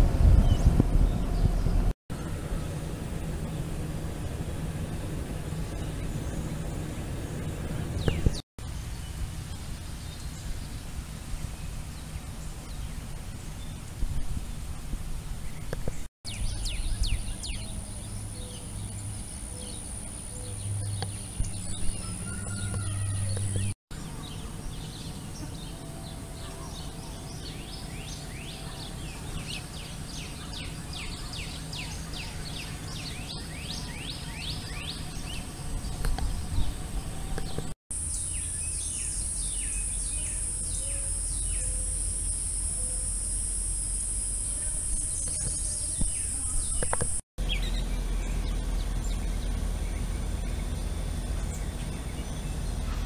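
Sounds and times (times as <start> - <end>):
low hum: 0.0 - 26.1, 34.2 - 53.0
birds chirping: 5.5 - 10.8, 15.3 - 53.0
high-pitched insect-like drone: 38.0 - 47.2.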